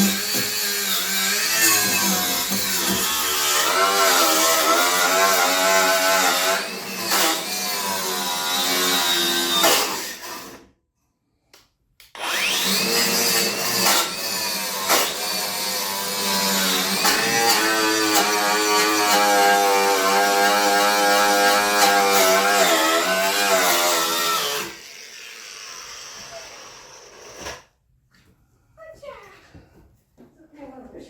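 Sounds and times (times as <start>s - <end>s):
power tool wire brush scrubbing metal: 12.2s - 27.0s.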